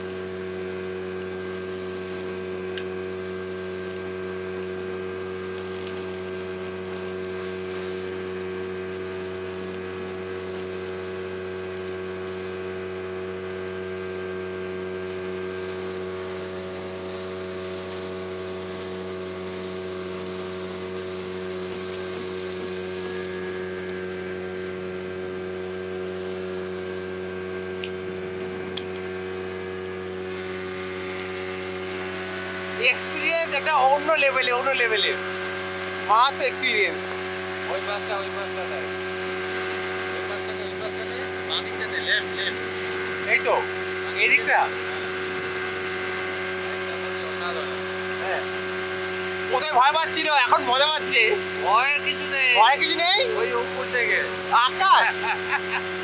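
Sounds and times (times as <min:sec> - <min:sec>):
speedboat motor running: 0:00.0 - 0:56.0.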